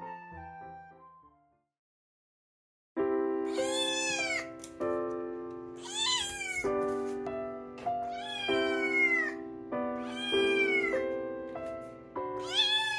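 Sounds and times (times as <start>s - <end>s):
kitten meowing: 3.5s - 4.6s, 5.8s - 6.8s, 8.0s - 9.4s, 10.0s - 11.0s, 12.4s - 12.9s.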